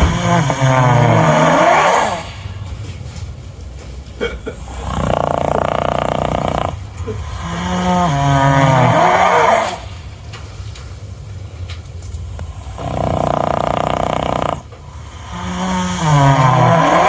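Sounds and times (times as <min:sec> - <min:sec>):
horse snoring: 0:00.0 - 0:02.7, 0:04.6 - 0:10.1, 0:12.4 - 0:17.0
horse groaning: 0:04.7 - 0:10.0.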